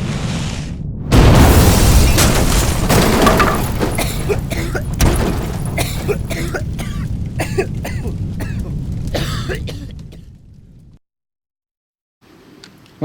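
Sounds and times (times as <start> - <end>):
loud firework boom: 1.0 - 11.0
fireworks bangs and crackles: 1.1 - 11.0.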